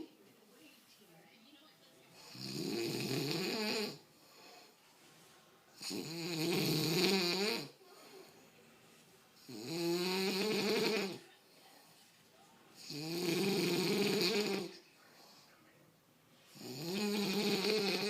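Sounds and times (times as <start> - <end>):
pig snoring: 2.2 - 4.0, 5.8 - 7.7, 9.5 - 11.2, 12.8 - 14.7, 16.5 - 18.0.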